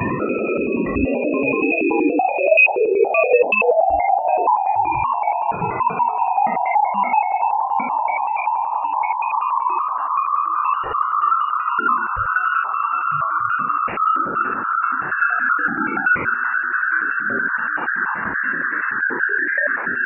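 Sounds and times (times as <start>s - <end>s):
low warbling tones: 0.0s - 20.0s.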